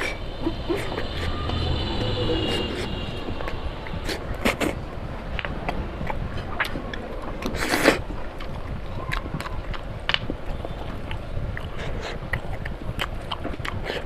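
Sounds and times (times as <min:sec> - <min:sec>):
steady low rumble: 0:00.0 - 0:13.5
wet chewing and mouth clicks: 0:05.4 - 0:14.0.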